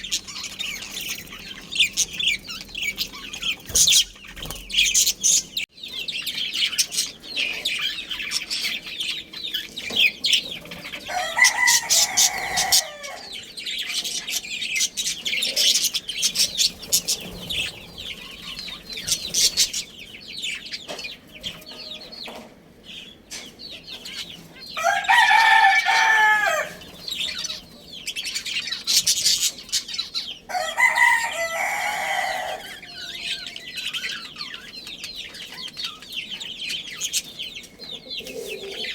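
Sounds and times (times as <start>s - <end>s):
budgies chirping: 0.0s - 38.9s
rooster crowing: 11.0s - 14.2s, 24.7s - 26.9s, 30.5s - 34.0s.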